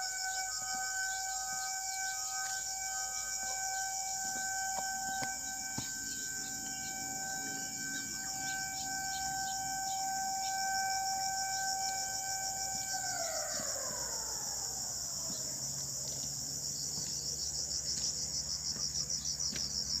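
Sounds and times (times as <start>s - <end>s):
tone sliding down in pitch: 0.0s - 14.4s
insects chirring: 0.0s - 20.0s.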